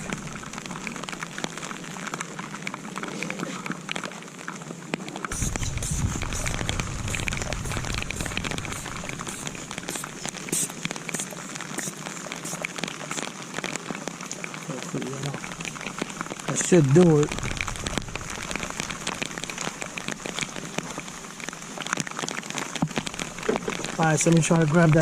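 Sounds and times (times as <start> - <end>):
rain falling: 0.0 - 25.0
low rumble: 5.3 - 10.5, 15.4 - 21.6.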